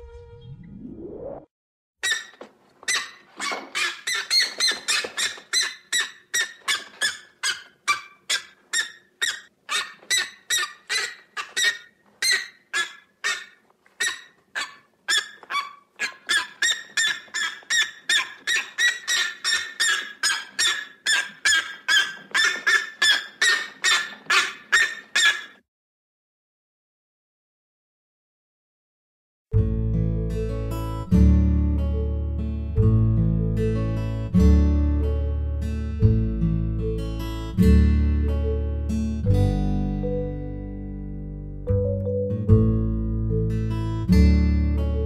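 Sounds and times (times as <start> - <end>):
goose honking: 2.9 - 25.6.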